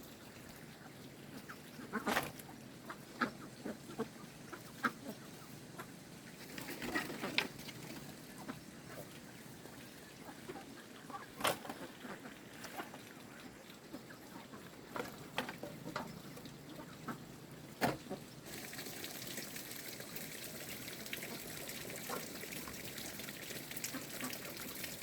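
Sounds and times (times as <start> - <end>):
running water hiss: 18.4 - 25.0.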